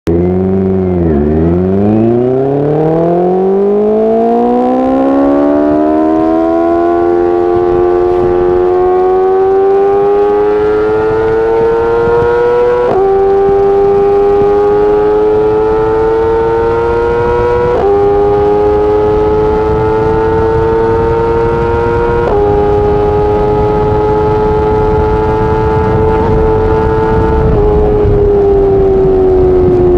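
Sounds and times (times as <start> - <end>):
motorcycle engine accelerating: 0.1 - 29.9.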